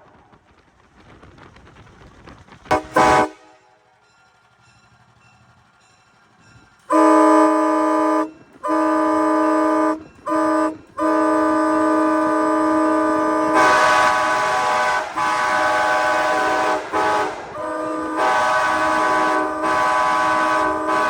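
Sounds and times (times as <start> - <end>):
train horn chord: 2.7 - 3.9, 6.9 - 21.0.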